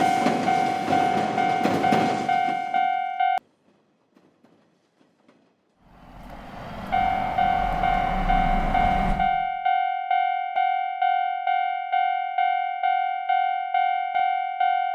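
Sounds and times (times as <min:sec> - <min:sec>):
train rumble: 0:03.6 - 0:09.6
railroad crossing bell ringing: 0:06.2 - 0:14.9.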